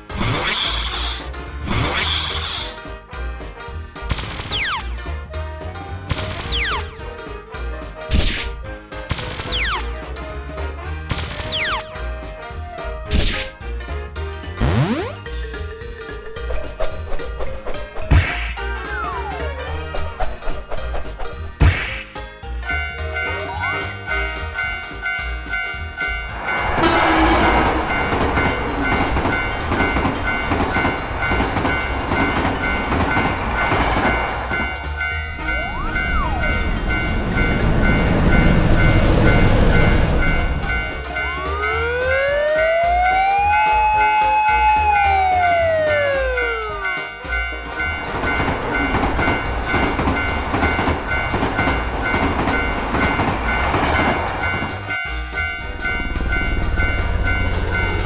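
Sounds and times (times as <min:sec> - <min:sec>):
train rushing and clattering: 0:00.0 - 0:58.0
railroad crossing bell clanging: 0:08.7 - 0:58.0
emergency siren passing: 0:14.6 - 0:15.2, 0:26.0 - 0:49.8.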